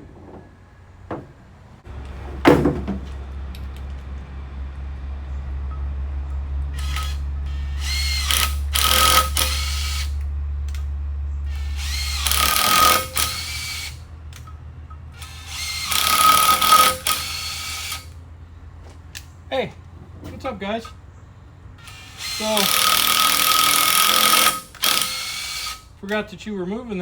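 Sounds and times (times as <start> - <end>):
power tool spinning up and down: 6.7 - 10.9, 11.5 - 14.1, 15.2 - 18.2, 21.8 - 26.0.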